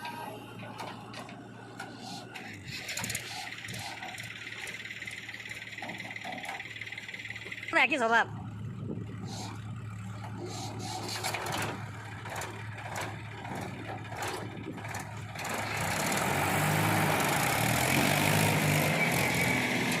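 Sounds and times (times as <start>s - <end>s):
heavy diesel engine running: 0.0s - 20.0s
knocks and clatter: 5.5s - 7.6s, 10.1s - 16.6s.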